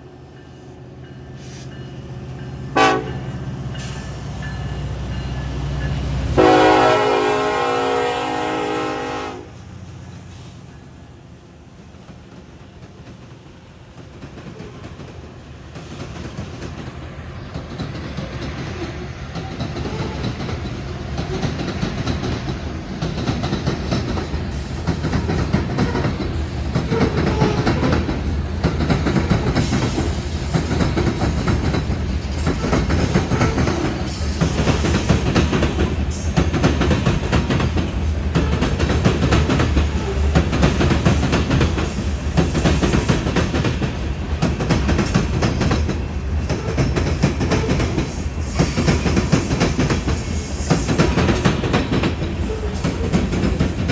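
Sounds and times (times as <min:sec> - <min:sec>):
train rumble: 0:00.0 - 0:53.9
train wheels clacking on rail joints: 0:12.0 - 0:53.9.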